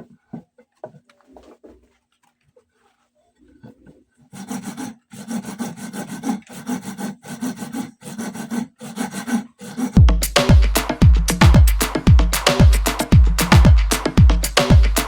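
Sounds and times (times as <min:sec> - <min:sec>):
hand tool rasping on plastic pipe: 0:03.6 - 0:10.4.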